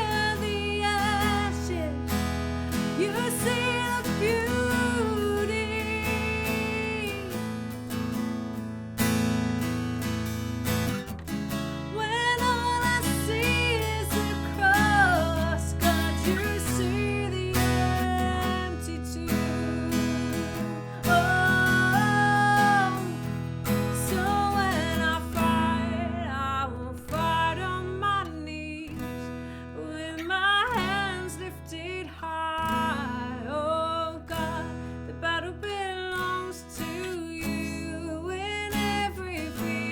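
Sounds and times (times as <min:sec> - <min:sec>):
acoustic guitar strumming: 0:00.0 - 0:39.9
person singing slow melody: 0:02.8 - 0:07.6, 0:12.0 - 0:23.4.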